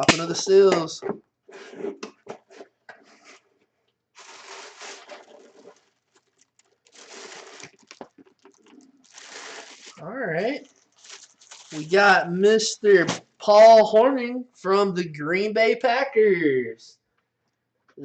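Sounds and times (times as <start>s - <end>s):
cardboard and packaging rustling: 4.2s - 12.2s.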